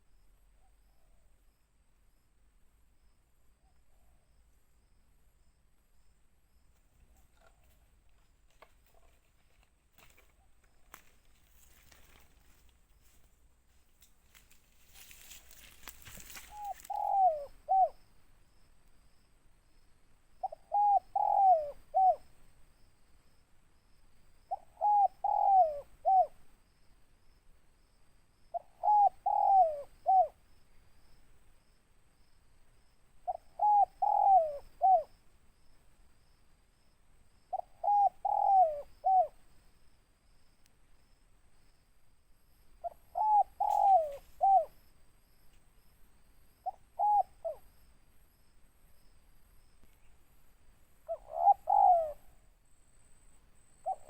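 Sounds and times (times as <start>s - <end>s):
dove cooing: 15.6s - 18.0s, 20.4s - 22.2s, 24.5s - 26.4s, 28.5s - 30.4s, 33.2s - 35.2s, 37.5s - 39.4s, 42.8s - 44.8s, 46.6s - 47.7s, 51.0s - 52.5s.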